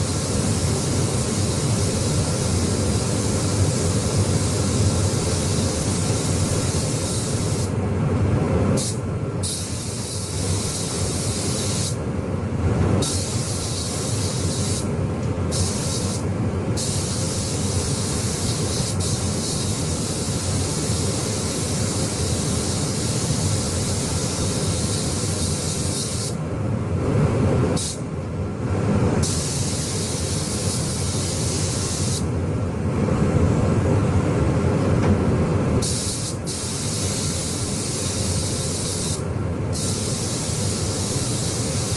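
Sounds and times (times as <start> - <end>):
paint spray gun hissing: 0.0 - 7.7, 8.8 - 12.0, 13.0 - 14.9, 15.5 - 16.2, 16.8 - 26.4, 27.8 - 28.0, 29.2 - 32.3, 35.8 - 41.9.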